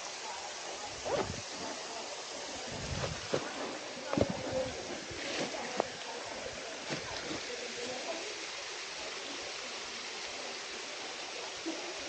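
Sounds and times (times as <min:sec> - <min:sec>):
flowing water rushing: 0:00.0 - 0:12.0.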